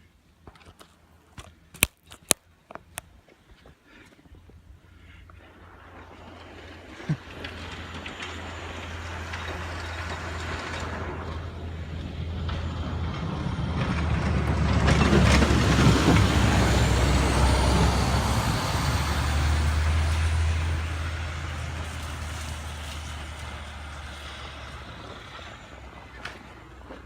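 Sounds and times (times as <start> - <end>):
steady low hum: 4.6 - 20.9
heavy vehicle passing by: 4.8 - 27.0.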